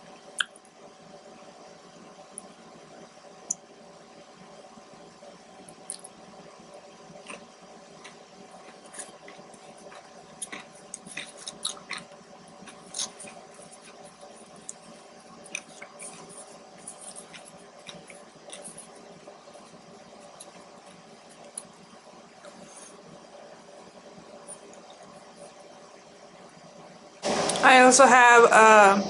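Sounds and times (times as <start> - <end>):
person chewing food: 7.2 - 21.8.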